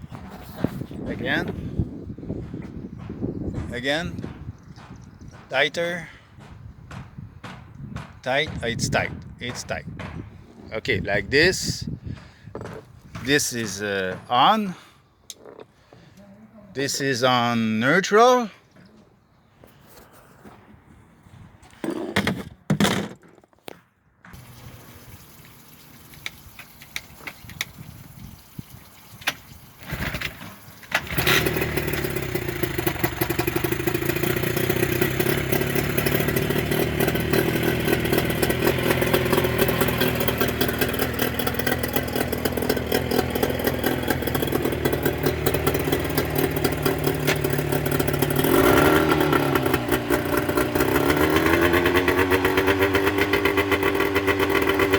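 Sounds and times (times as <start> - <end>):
outboard motor starting and running: 24.4 - 54.9.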